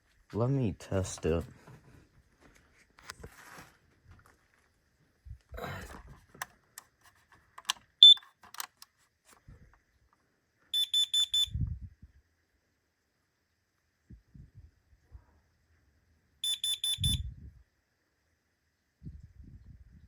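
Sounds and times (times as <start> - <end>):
handling rustle: 1.0 - 4.7, 5.8 - 9.5
smoke alarm high beeps: 8.0 - 8.2, 10.7 - 11.6, 16.4 - 17.3
smoke alarm high chirp: 8.0 - 8.2, 10.7 - 11.6, 16.4 - 17.3.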